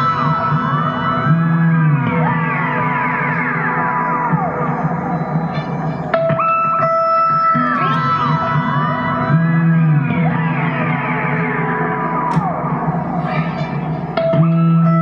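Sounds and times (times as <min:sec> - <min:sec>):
electric guitar gliding tones: 0:00.0 - 0:15.0.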